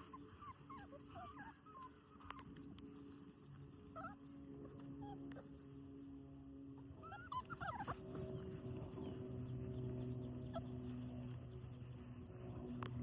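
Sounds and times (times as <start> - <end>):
puppies whimpering and yipping: 0.0 - 5.5, 6.8 - 11.4
steady low hum: 0.0 - 13.0.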